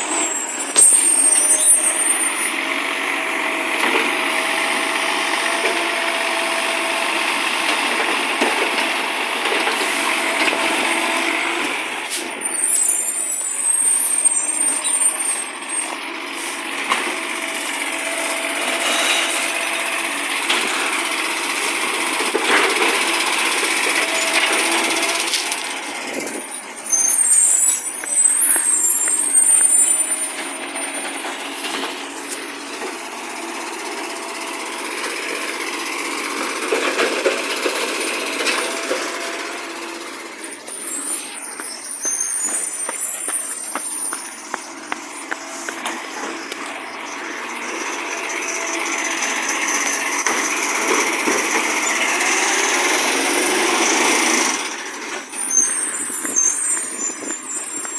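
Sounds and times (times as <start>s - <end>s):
high-pitched squeals: 0.0s - 2.9s, 11.4s - 16.0s, 23.6s - 32.7s, 36.9s - 57.9s
garbage truck engine: 0.0s - 57.9s.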